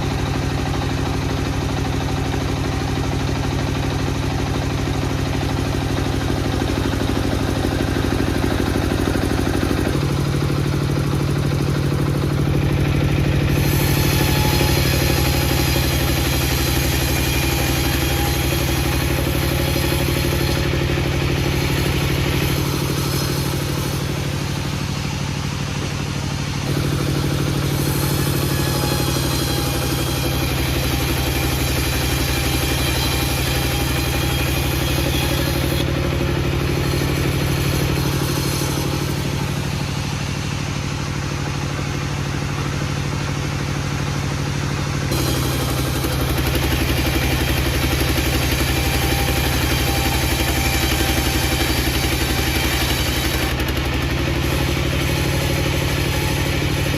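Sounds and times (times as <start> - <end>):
engine running steadily: 0.0 - 56.9.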